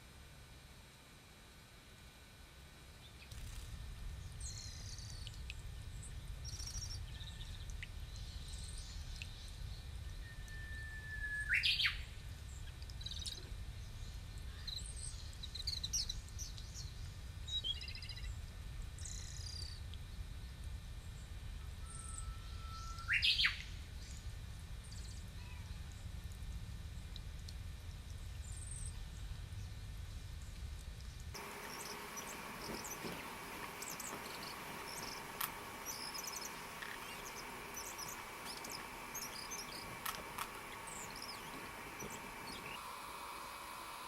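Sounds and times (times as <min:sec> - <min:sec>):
low steady rumble: 0:01.6 - 0:42.8
bird call sweeping upward: 0:31.4 - 0:42.8
small birds chirping: 0:31.4 - 0:42.8.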